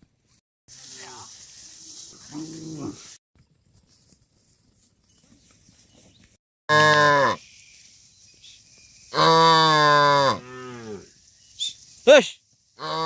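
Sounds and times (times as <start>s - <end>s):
cow mooing: 9.2s - 11.1s.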